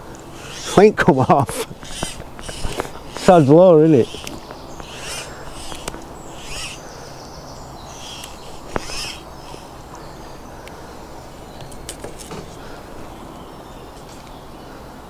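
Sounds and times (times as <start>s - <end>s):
birds singing and chirping: 0.0s - 14.9s
sharp click: 8.2s - 9.2s.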